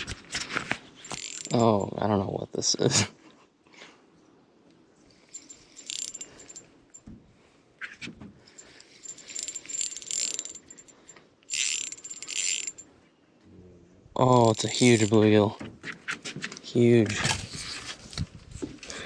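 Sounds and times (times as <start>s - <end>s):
fishing reel clicking: 1.1s - 1.8s, 5.3s - 6.6s, 8.6s - 12.8s, 14.2s - 15.2s.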